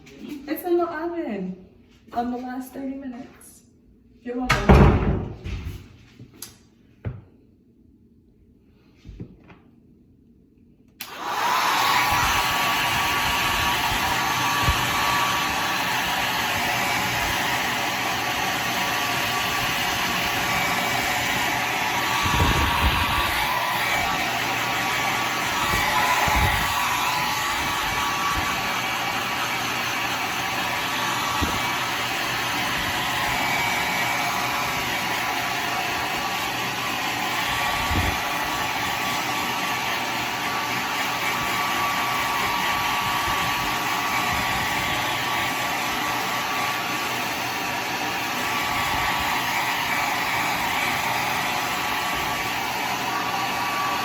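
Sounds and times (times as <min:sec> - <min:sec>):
hair dryer running: 0:11.0 - 0:54.0.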